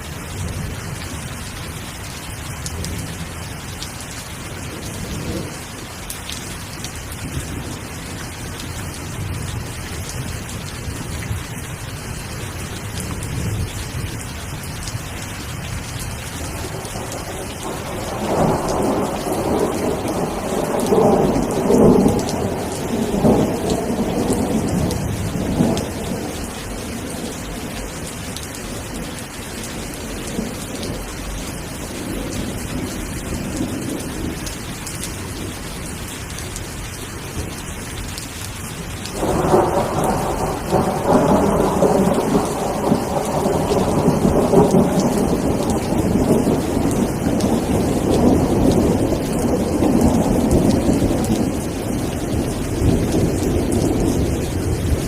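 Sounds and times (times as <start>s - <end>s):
steady rain: 0.0s - 55.0s
thunder rumbling: 16.4s - 34.4s, 39.2s - 55.0s.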